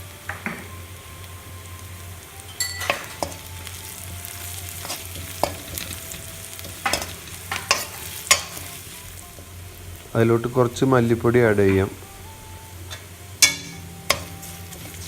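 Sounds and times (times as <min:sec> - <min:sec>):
onion sizzling in oil: 0:00.0 - 0:15.0
spoon scraping a pan: 0:02.5 - 0:09.6, 0:12.8 - 0:15.0.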